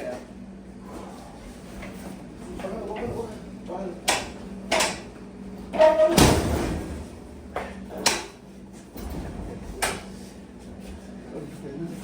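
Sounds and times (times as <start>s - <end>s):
vending machine knocks and bangs: 6.0s - 7.1s.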